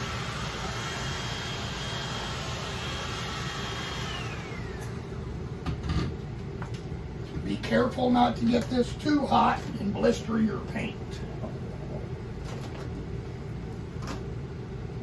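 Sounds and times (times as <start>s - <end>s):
heat gun blower whining: 0.0s - 6.1s.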